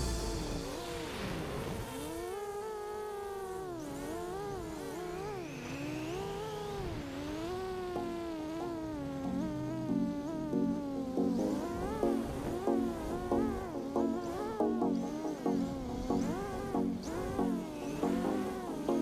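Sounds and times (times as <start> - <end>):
quadcopter motors whining: 1.9 - 14.6.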